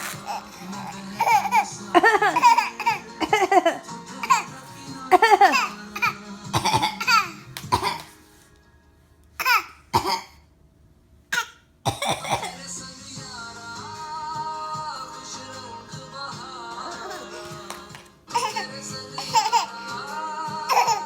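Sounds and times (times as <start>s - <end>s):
infant laughing and squealing: 0.0s - 6.2s, 20.6s - 21.0s
baby coughing: 0.0s - 8.2s, 9.4s - 10.4s, 11.3s - 12.7s, 18.3s - 19.9s, 20.6s - 21.0s
woman coughing: 1.2s - 4.5s, 5.1s - 8.2s, 10.0s - 10.4s, 11.9s - 12.6s.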